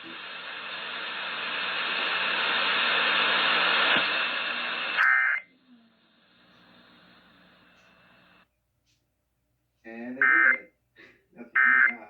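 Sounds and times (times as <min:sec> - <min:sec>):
radio static hiss: 0:00.0 - 0:08.4, 0:10.2 - 0:10.6, 0:11.5 - 0:12.0.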